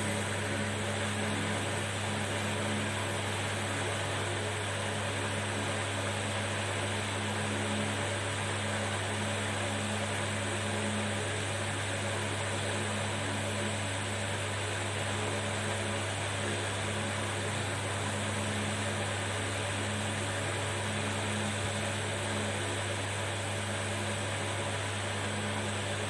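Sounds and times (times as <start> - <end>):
low steady hum: 0.0 - 5.9
hot air blower hissing: 0.0 - 9.9, 15.1 - 26.0.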